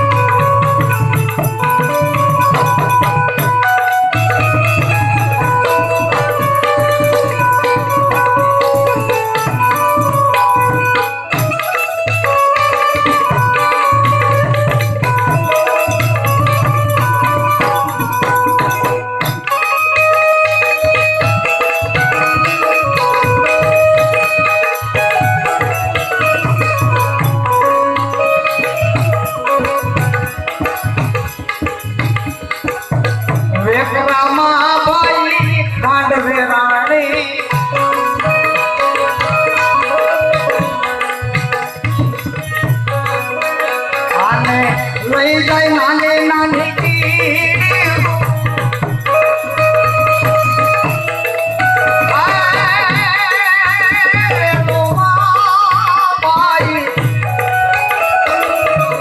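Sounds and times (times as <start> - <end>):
hand drum: 0.0 - 59.0
jingling percussion: 0.0 - 59.0
melodic instrument held notes: 0.0 - 59.0
person singing: 33.5 - 49.6, 51.2 - 59.0.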